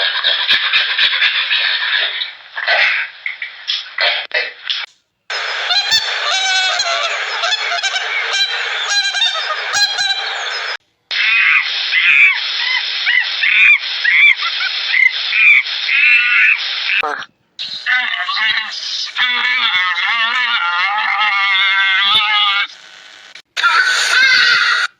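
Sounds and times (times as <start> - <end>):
flock of birds honking: 5.7 - 12.2.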